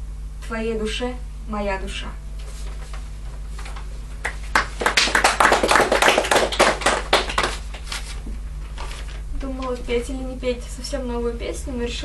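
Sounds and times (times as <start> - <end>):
audience clapping: 4.2 - 8.1.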